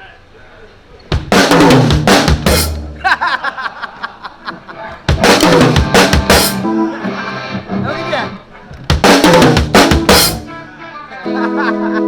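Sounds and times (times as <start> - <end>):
drum kit fills: 1.1 - 3.2, 5.0 - 6.7, 8.8 - 10.6.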